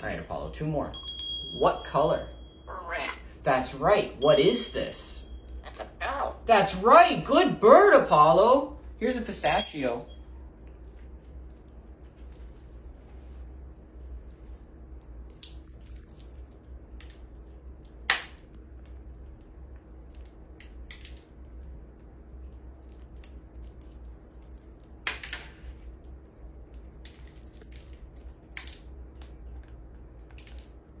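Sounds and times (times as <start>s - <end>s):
parrot cracking pistachio shell: 15.0s - 21.9s.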